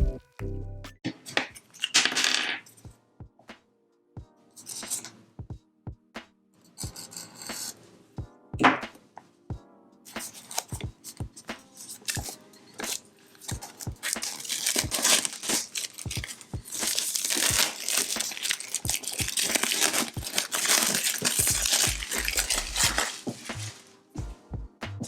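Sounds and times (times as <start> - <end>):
packaging crinkling and tearing: 10.2 - 11.2, 11.8 - 24.0.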